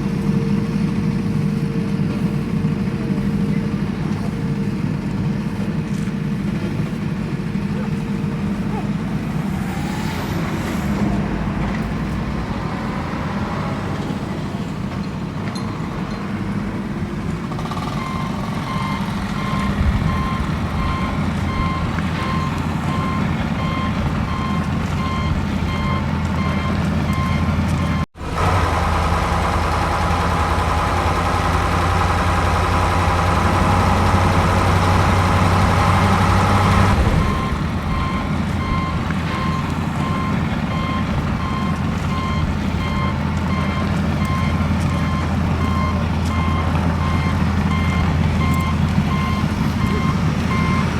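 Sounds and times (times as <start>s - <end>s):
off-road vehicle engine running: 0.0s - 50.9s
electronic warning beep: 17.8s - 28.1s, 36.8s - 50.9s.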